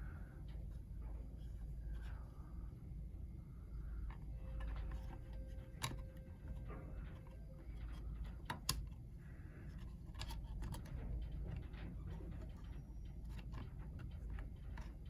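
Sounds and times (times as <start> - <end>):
low steady hum: 0.0 - 15.0
small parts and tools clicking: 9.7 - 15.0.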